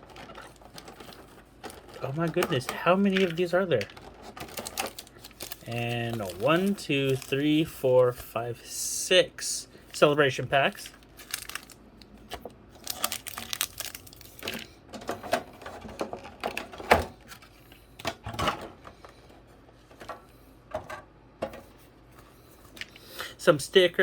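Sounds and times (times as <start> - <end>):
crinkling of wrappers: 0.0 - 8.3, 9.9 - 14.7.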